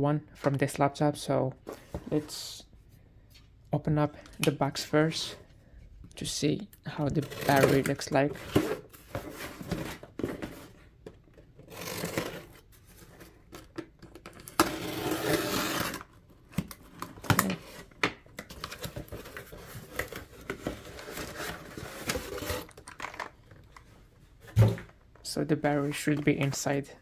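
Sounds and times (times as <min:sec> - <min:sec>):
cardboard box being opened: 0:07.2 - 0:10.8, 0:11.7 - 0:13.3, 0:18.5 - 0:22.9.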